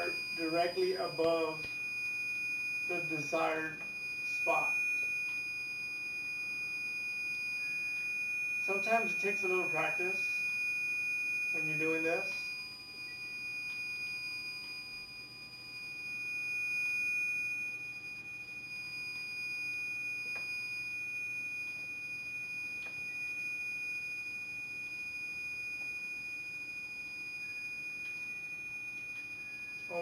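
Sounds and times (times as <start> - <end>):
continuous high-pitched tone: 0.0 - 30.0.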